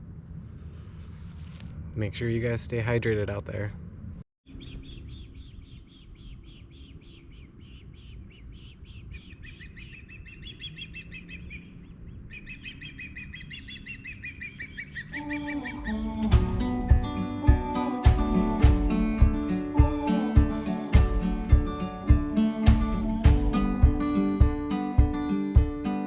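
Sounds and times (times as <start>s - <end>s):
lower bird call series: 4.5s - 16.3s
bird whistled chirps: 12.3s - 15.9s
acoustic guitar music: 15.3s - 26.0s.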